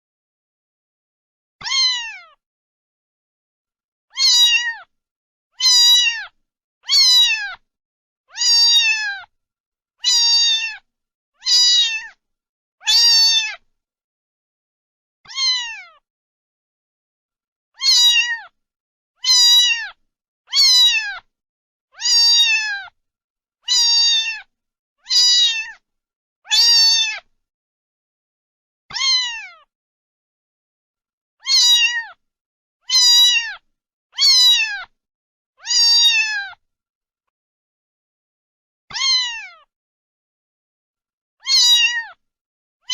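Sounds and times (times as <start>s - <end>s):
cat meowing: 1.6s - 2.4s, 4.1s - 4.9s, 5.6s - 7.6s, 8.3s - 9.3s, 10.0s - 12.2s, 12.8s - 13.6s, 15.3s - 16.0s, 17.8s - 18.6s, 19.2s - 21.3s, 22.0s - 23.0s, 23.6s - 25.8s, 26.5s - 27.3s, 28.9s - 29.7s, 31.4s - 32.2s, 32.8s - 35.0s, 35.6s - 36.6s, 38.9s - 39.7s, 41.4s - 42.2s.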